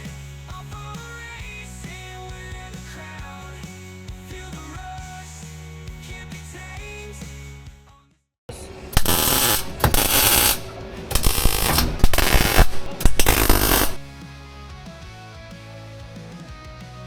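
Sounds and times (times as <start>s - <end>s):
rock music with guitar: 0.0s - 7.6s, 8.9s - 17.0s
angle grinder grinding sheet steel: 9.0s - 14.0s.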